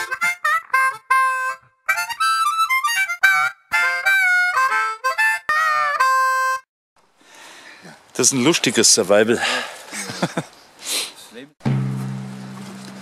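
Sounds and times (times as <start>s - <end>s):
solo harmonica tune: 0.0s - 6.7s.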